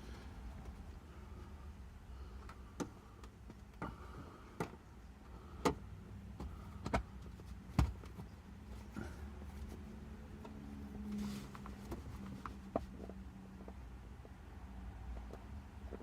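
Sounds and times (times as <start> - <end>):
hands clicking and tapping on seat: 2.4 - 4.8, 5.6 - 8.3.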